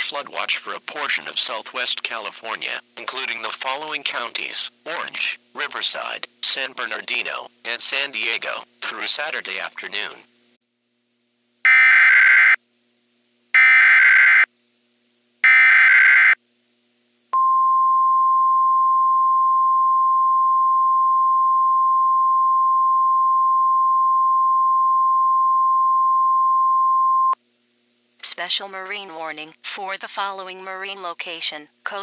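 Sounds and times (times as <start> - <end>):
screeching data bursts: 11.7 - 12.6, 13.6 - 14.5, 15.4 - 16.4
steady single-pitch alert tone: 11.7 - 12.6.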